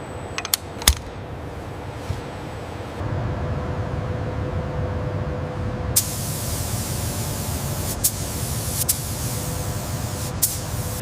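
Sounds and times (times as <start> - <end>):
low industrial rumble: 0.0 - 8.5
hissing rush of air: 6.0 - 11.0.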